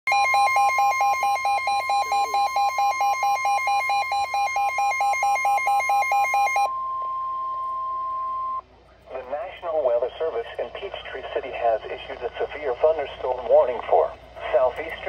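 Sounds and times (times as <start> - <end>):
steady high alarm tone: 0.1 - 8.6.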